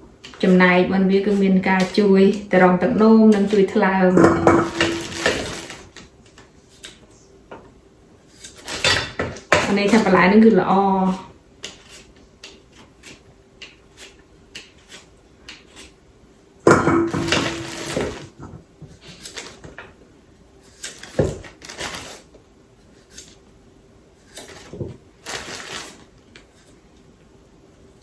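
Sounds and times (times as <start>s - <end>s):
kitchenware clattering: 0.4s - 5.9s, 8.7s - 10.4s, 16.7s - 18.6s.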